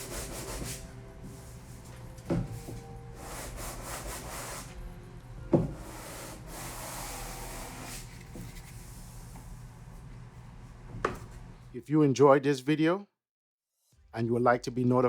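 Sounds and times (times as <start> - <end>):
sandpaper rubbing over wood: 0.0 - 0.8, 3.2 - 4.8, 5.8 - 9.2.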